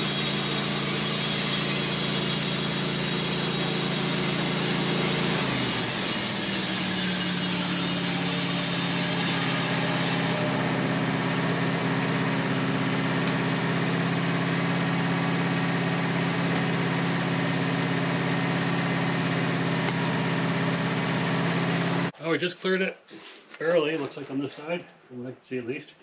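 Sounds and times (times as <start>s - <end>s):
saw blade hissing through wood: 0.0s - 10.8s
sawmill engine running: 0.0s - 22.1s.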